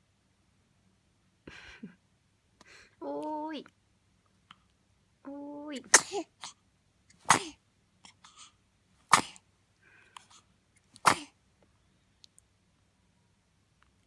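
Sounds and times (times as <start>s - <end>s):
person sneezing: 5.9s - 6.6s, 7.2s - 7.6s, 8.3s - 9.4s, 11.0s - 11.4s.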